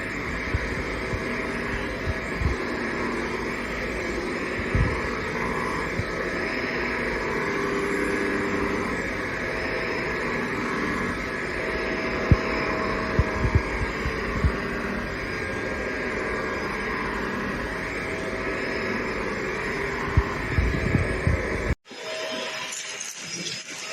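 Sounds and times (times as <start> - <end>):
vacuum cleaner humming: 0.0 - 23.9.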